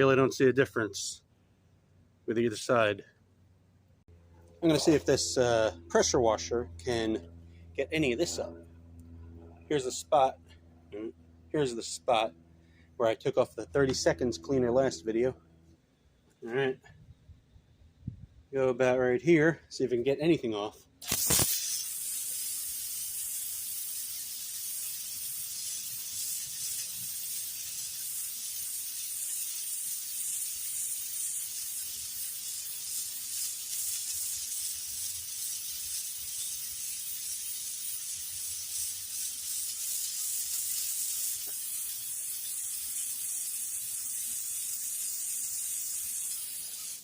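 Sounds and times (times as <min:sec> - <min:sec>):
water jet spraying with hiss: 0:21.0 - 0:47.0.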